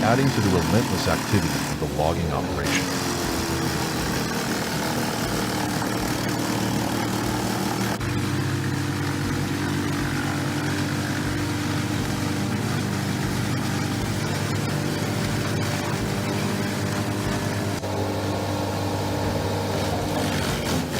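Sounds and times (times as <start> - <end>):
heavy machinery engine drone: 0.0 - 20.9.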